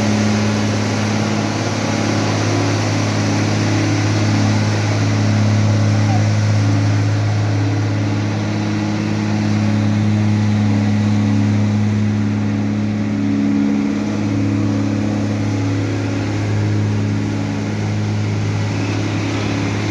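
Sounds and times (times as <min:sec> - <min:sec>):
truck engine droning: 0:00.0 - 0:19.9.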